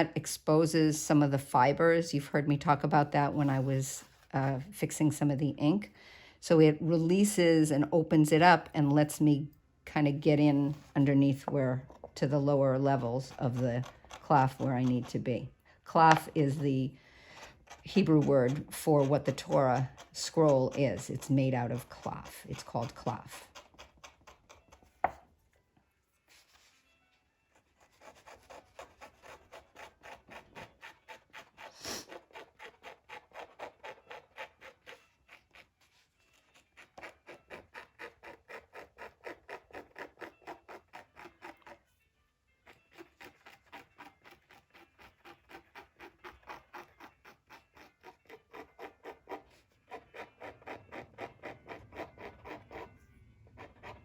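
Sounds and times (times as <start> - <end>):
blade scraping parchment: 10.3 - 25.2, 27.6 - 41.9, 42.6 - 54.0.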